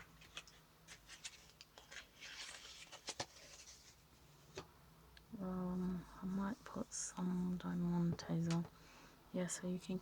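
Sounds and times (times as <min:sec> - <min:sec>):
soft rustle of craft items: 0:00.0 - 0:10.0.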